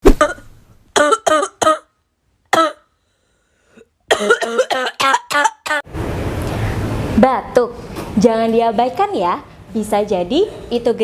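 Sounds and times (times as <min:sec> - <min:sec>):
person coughing: 0:00.1 - 0:01.9, 0:02.5 - 0:02.9, 0:04.1 - 0:05.8.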